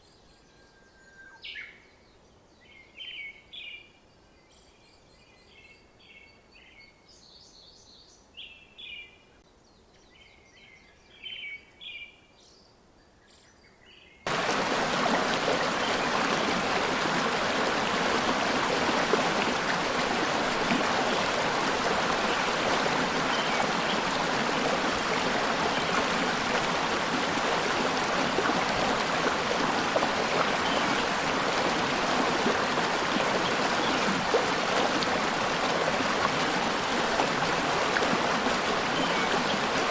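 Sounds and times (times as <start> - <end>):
rushing stream: 14.3 - 39.9.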